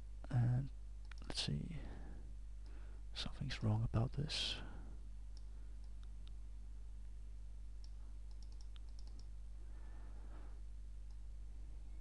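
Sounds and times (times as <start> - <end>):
low electrical hum: 0.0 - 12.0
computer clicks: 1.0 - 1.4, 5.3 - 6.4, 7.8 - 9.3.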